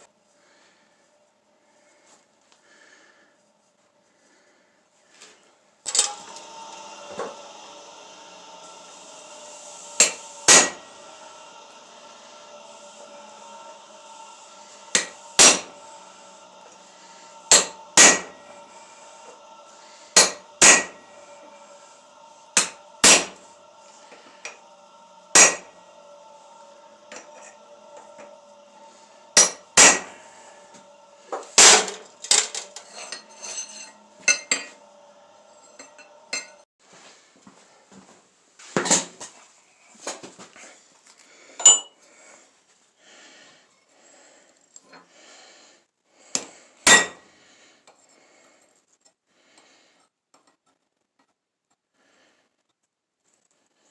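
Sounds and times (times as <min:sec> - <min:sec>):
faint steady hum: 0:00.0 - 0:38.2
hammer striking steel on anvil: 0:10.0 - 0:21.7, 0:22.5 - 0:23.7, 0:24.4 - 0:34.9, 0:46.4 - 0:47.2.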